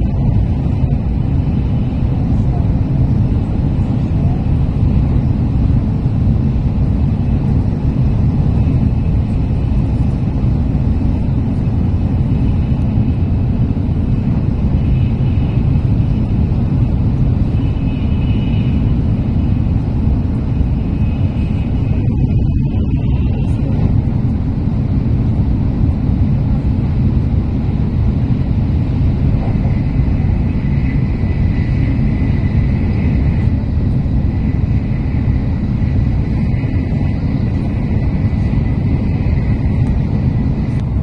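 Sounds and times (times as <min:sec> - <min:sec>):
faint high whine: 0:00.0 - 0:25.1
train rumble inside passenger car: 0:00.0 - 0:41.0.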